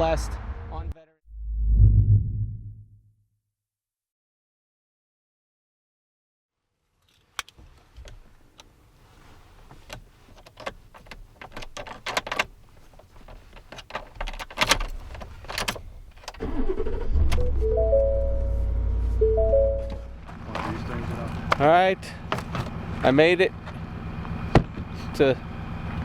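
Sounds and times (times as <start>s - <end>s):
vehicle engine rumbling: 9.5s - 26.0s
sharp clicks and clunks: 9.7s - 16.5s, 22.3s - 22.8s.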